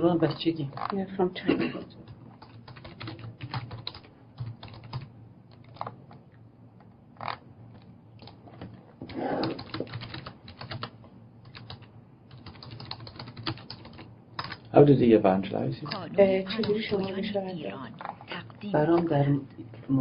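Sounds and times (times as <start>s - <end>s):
keyboard typing: 2.4s - 6.0s, 7.2s - 14.7s, 16.5s - 17.2s.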